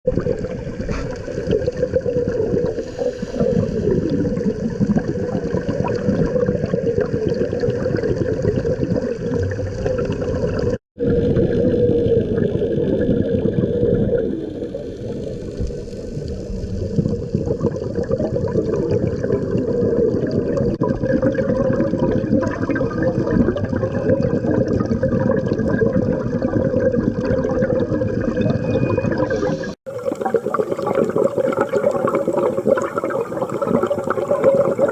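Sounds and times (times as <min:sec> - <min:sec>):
air bubbling underwater: 0:00.0 - 0:15.3, 0:16.4 - 0:34.9.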